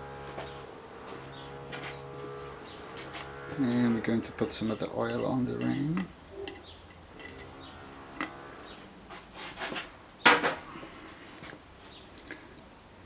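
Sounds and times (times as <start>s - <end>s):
tools clicking and knocking: 4.8s - 7.6s.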